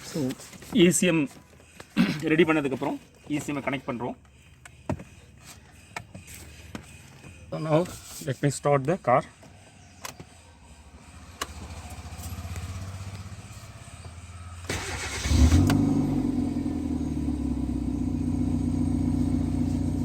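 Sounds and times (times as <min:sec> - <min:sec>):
car engine idling: 0:11.0 - 0:20.0
car starter cranking: 0:14.6 - 0:17.6.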